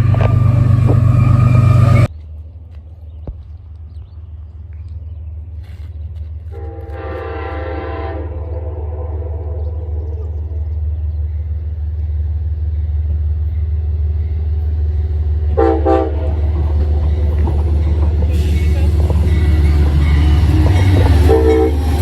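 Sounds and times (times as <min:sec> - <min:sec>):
train horn blasts: 0:06.5 - 0:10.3, 0:15.5 - 0:22.0
steady low rumble: 0:08.3 - 0:22.0.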